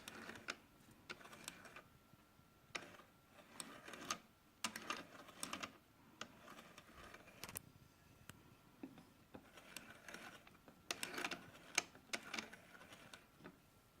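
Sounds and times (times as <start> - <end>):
faint steady high tone: 7.6 - 9.2.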